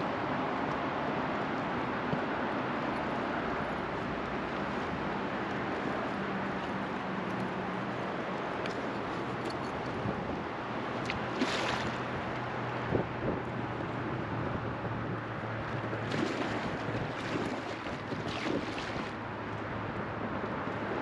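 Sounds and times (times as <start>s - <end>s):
river water lapping against raft: 0.0s - 21.0s
water splashes: 7.8s - 12.9s, 15.5s - 19.6s
wind on microphone: 9.1s - 21.0s.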